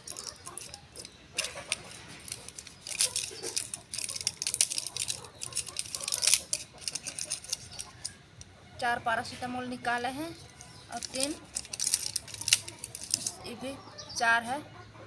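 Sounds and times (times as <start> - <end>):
blister pack foil crackling: 0.0 - 8.2, 10.4 - 13.4.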